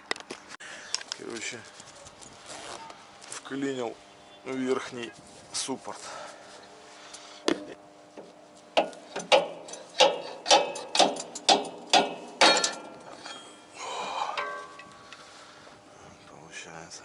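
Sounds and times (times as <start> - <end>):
ringing metal knocks: 8.8 - 13.6, 14.3 - 15.0.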